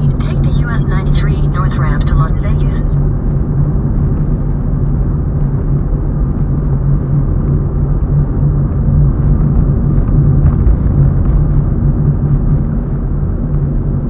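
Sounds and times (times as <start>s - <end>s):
car engine and tyre noise: 3.0s - 14.0s.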